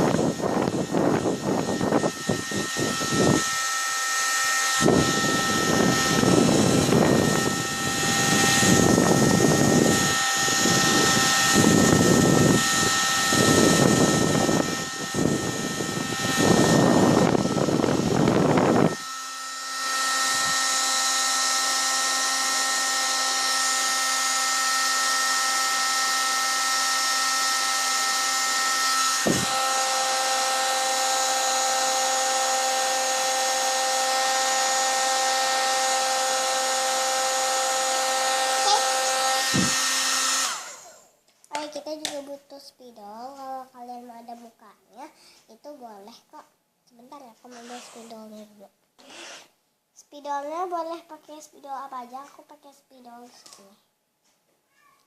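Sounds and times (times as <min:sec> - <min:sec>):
air buffeting rumble: 0:00.0 - 0:03.6, 0:04.8 - 0:19.0
hair dryer motor whine: 0:00.0 - 0:41.2, 0:49.0 - 0:49.5.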